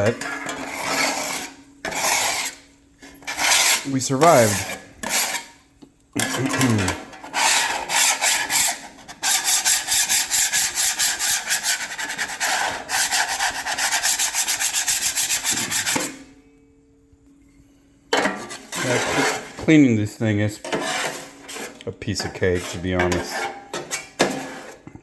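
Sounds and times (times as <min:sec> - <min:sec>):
scrubbing griddle plate: 0:00.0 - 0:05.6, 0:06.2 - 0:16.3, 0:18.2 - 0:25.0
faint steady hum: 0:11.4 - 0:23.7.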